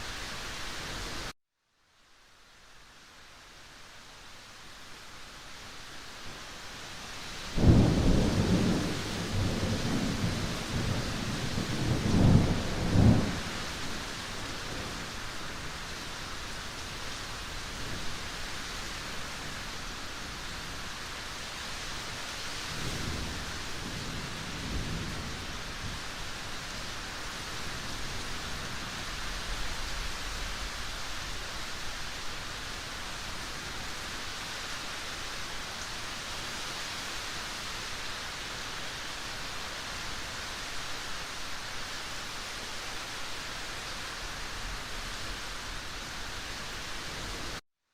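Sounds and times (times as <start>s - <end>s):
rain hissing: 0.0s - 1.3s, 2.5s - 47.6s
thunder rumbling: 7.6s - 13.8s.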